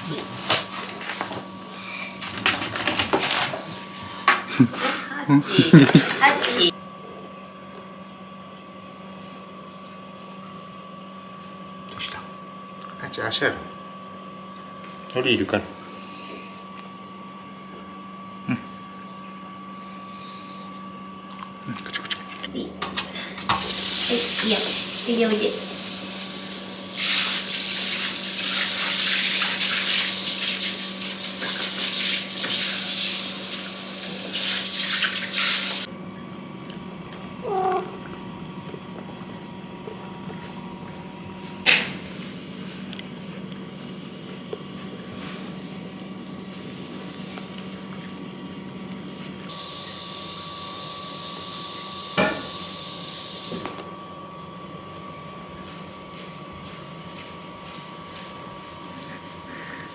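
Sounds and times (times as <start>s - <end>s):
water running from a tap: 23.5s - 35.9s
thin hiss: 23.6s - 35.9s, 52.2s - 53.6s.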